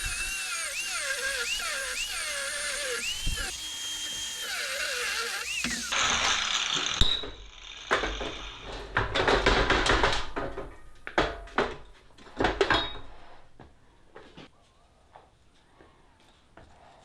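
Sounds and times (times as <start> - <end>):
tools and metal parts clattering: 8.7 - 13.1.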